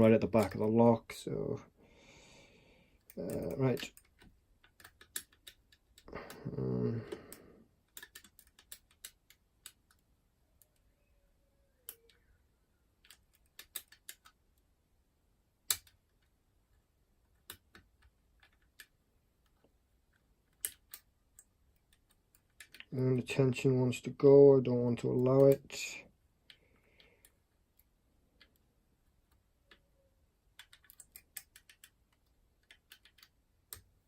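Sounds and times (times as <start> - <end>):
person speaking: 0.0 - 1.8, 3.0 - 4.0, 6.0 - 7.6, 22.7 - 26.2.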